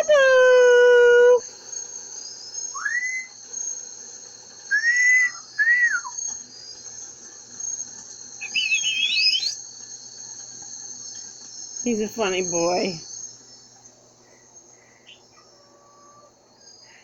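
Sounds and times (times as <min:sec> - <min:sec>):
parrots whistling: 0:02.8 - 0:03.3, 0:08.4 - 0:09.6
faint high-pitched hiss: 0:07.8 - 0:09.6.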